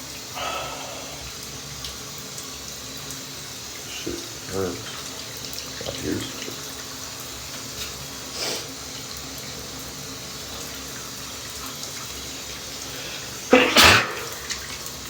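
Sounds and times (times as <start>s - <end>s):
running water hiss: 0.0s - 15.0s
man sneezing: 13.5s - 14.3s.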